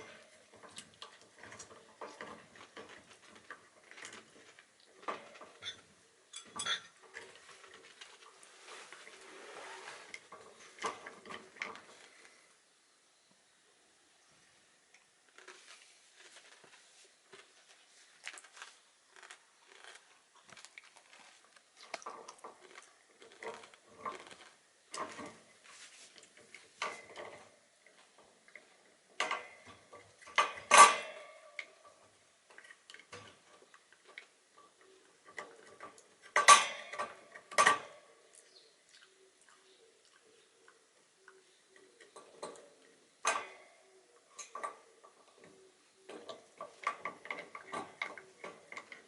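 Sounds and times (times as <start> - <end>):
dog gnawing on hoof chew: 15.3 - 25.4.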